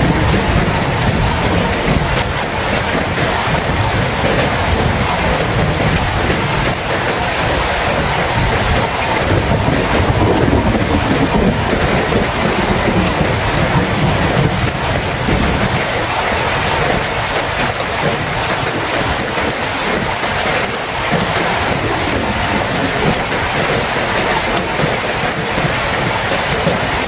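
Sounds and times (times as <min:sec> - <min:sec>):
low rumble of thunder: 0:00.0 - 0:18.6, 0:21.1 - 0:27.0
heavy rain: 0:00.0 - 0:27.0.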